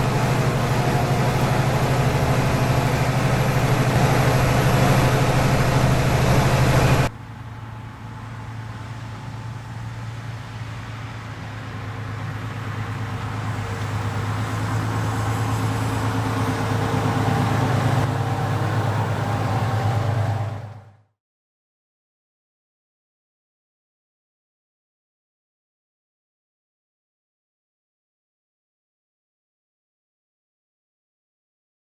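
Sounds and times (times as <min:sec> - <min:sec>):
tractor diesel engine running: 0:00.0 - 0:21.0.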